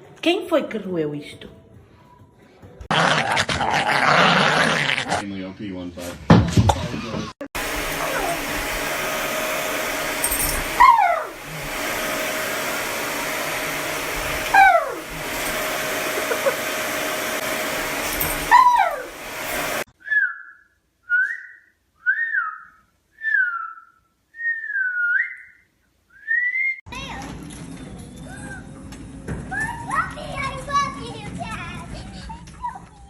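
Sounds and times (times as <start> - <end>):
blower-like rushing noise: 7.6 - 19.9.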